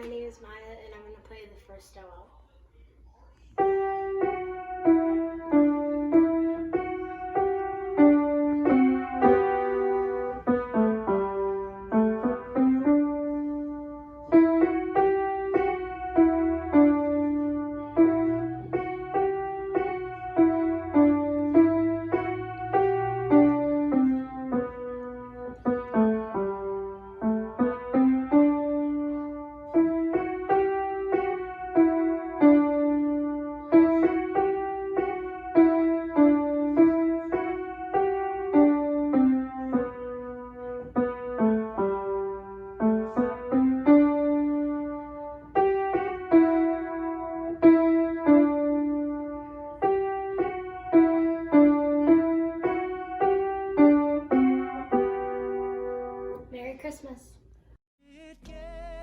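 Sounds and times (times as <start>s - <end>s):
solo piano melody: 3.4s - 56.6s.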